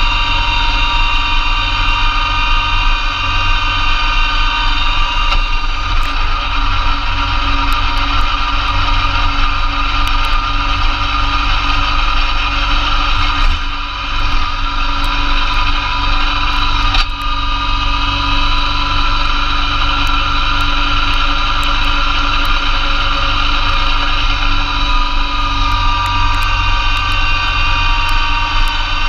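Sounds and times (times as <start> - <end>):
tractor and snowblower droning: 0.0 - 29.0.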